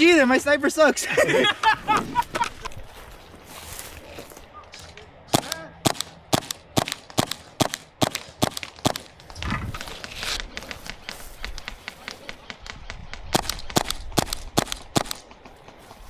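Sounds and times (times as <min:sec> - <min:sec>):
rustle of movement: 0:00.0 - 0:05.3, 0:08.2 - 0:13.6
airsoft pistol shots: 0:05.3 - 0:09.2, 0:13.3 - 0:15.4.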